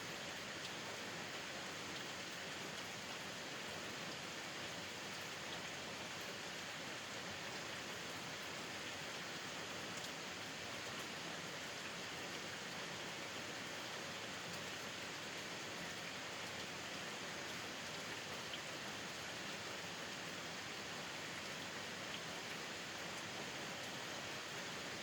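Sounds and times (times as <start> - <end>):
rain pattering: 0.1 - 25.0.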